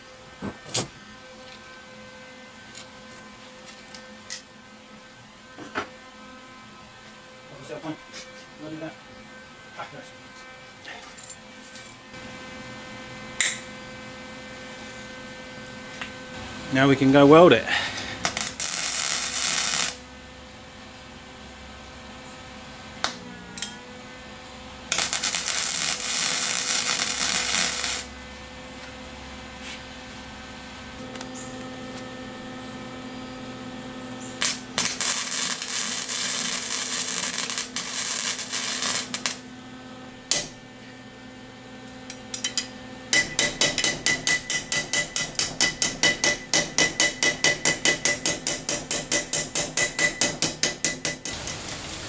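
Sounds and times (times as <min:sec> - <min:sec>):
steady hum: 0:08.8 - 0:51.8
welder arc crackling: 0:18.2 - 0:20.2, 0:24.9 - 0:28.2, 0:34.4 - 0:39.5, 0:51.1 - 0:52.0
hammer blows on metal: 0:42.4 - 0:51.7.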